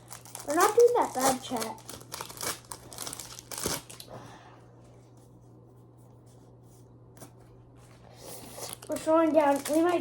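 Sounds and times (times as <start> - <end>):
foil and cards rustling: 0.0 - 4.1, 8.2 - 10.0.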